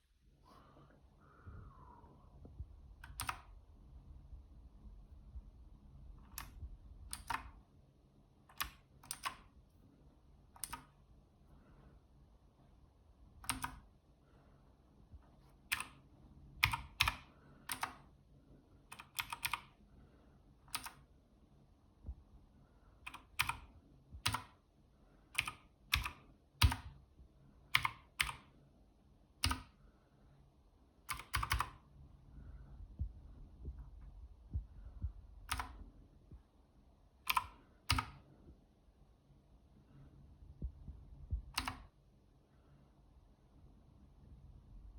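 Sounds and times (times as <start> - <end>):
mechanical keyboard key clicks: 3.0 - 3.5, 6.3 - 7.5, 8.5 - 9.4, 10.6 - 10.9, 13.4 - 13.8, 18.9 - 19.7, 20.7 - 21.0, 31.1 - 31.8, 35.5 - 35.8, 37.3 - 38.2, 41.5 - 41.9.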